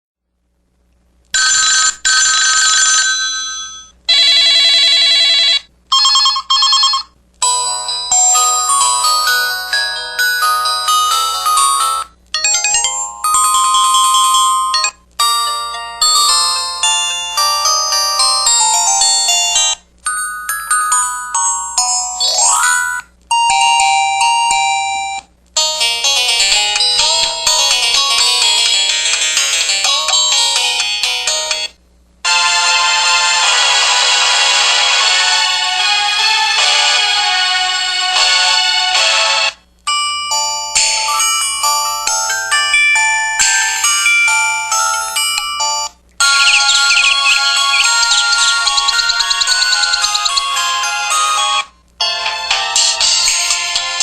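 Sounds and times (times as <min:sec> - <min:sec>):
electronic phone ring: 0:01.4 - 0:18.3, 0:40.3 - 0:51.6
melody ringtone: 0:01.4 - 0:34.4, 0:39.9 - 0:54.0.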